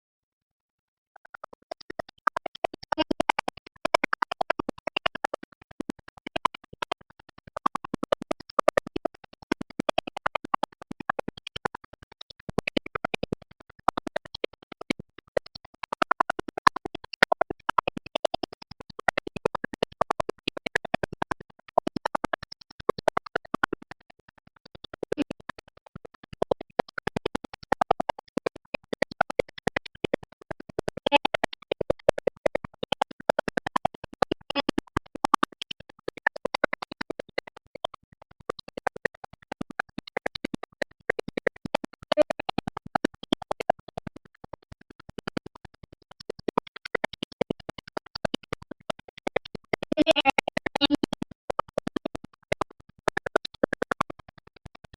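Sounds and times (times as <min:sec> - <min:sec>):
chopped stuttering beat: 0:30.7 - 0:35.6, 0:46.3 - 0:52.2.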